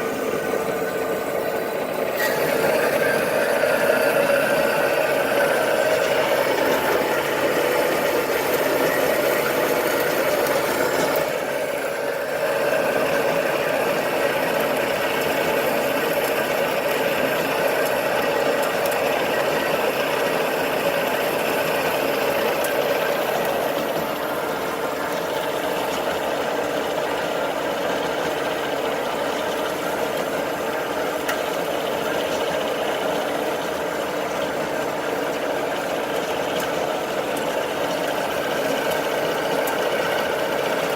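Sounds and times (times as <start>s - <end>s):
band saw running: 0.0s - 27.2s.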